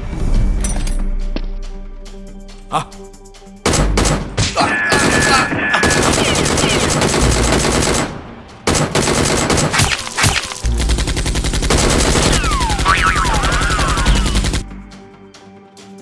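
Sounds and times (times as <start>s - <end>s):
rapid automatic gunfire: 3.7s - 14.6s.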